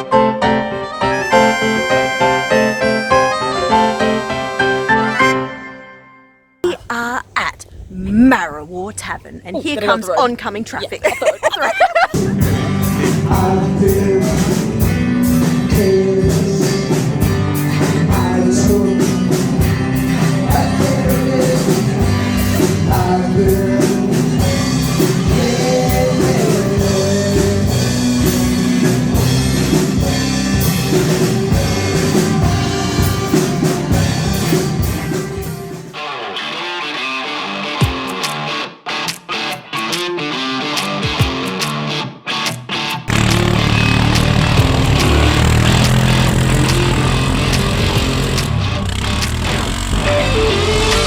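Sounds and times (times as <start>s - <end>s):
person singing: 11.0s - 17.2s, 17.8s - 28.1s, 50.0s - 51.0s
live rock band: 11.0s - 51.0s.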